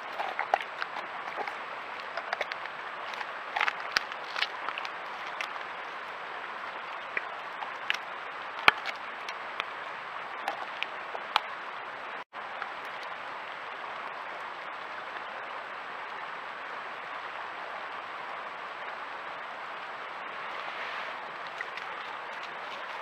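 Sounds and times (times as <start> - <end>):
bear crunching bone: 0.0 - 11.6, 21.4 - 23.0
steady hiss: 0.0 - 23.0.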